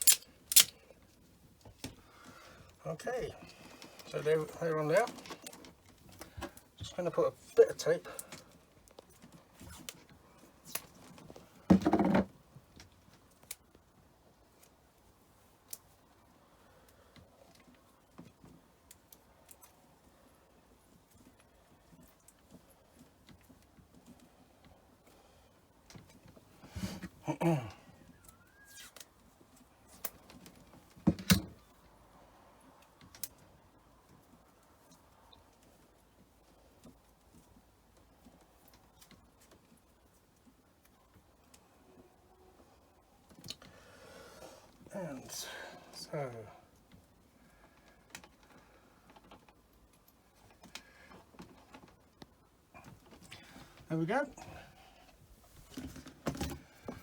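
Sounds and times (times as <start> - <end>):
handling clicks and knocks: 0.0 - 0.8
tape tearing: 0.0 - 0.8
light clicks and rustles: 0.0 - 11.6, 28.0 - 32.0, 32.6 - 41.8, 46.7 - 57.0
tape screeching off roll: 28.4 - 29.0.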